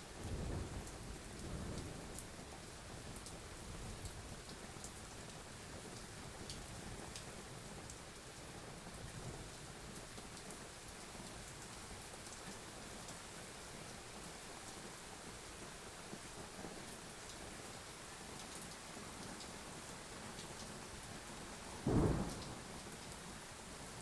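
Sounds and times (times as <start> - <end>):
steady rain hiss: 0.0 - 24.0
distant thunder rumble: 21.8 - 22.7.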